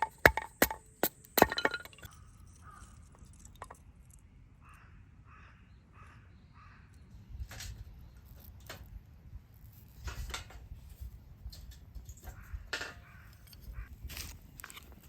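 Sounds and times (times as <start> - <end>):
rustling and scraping handling noise: 7.4 - 15.0.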